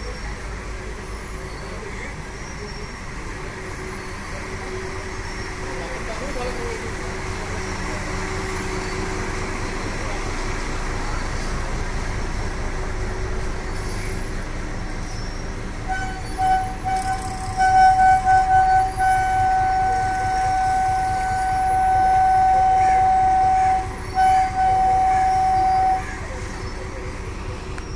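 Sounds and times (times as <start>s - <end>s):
toy train horn tooting: 15.9s - 26.2s.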